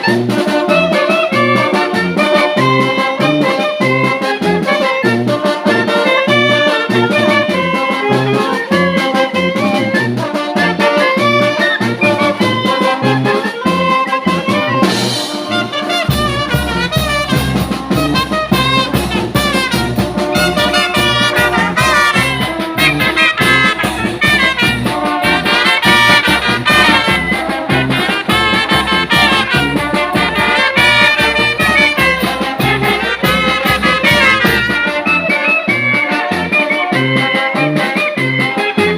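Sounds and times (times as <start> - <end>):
brass band playing: 0.0 - 38.9.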